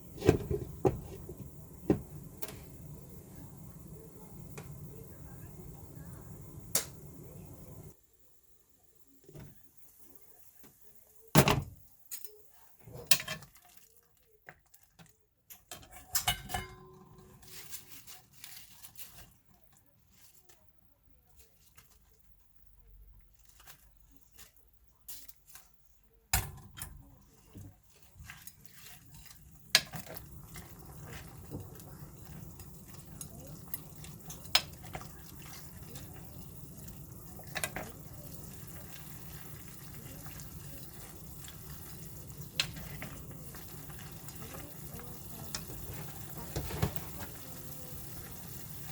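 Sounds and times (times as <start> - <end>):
food sizzling in a hot pan: 0.0 - 8.3, 28.0 - 48.9
utensils and dishes clinking: 15.7 - 17.7.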